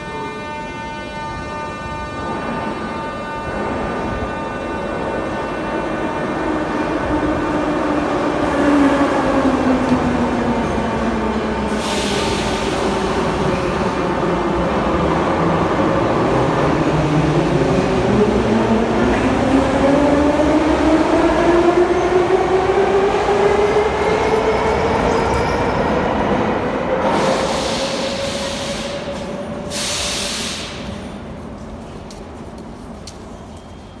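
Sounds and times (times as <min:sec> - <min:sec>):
train humming loudly: 0:00.0 - 0:33.8
air hissing: 0:11.7 - 0:14.0, 0:27.1 - 0:31.2.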